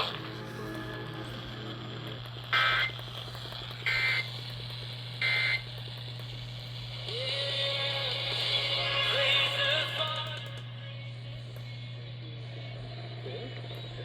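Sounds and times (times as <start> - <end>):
buzzy digital squawks: 0.0 - 3.0, 3.8 - 4.3, 5.2 - 5.7
steady low hum: 0.0 - 14.0.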